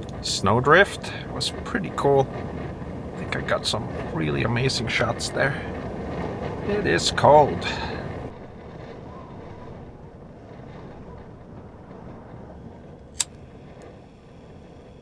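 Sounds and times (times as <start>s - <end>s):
low rumbling noise: 0.0s - 15.0s
sharp click: 13.2s - 13.9s.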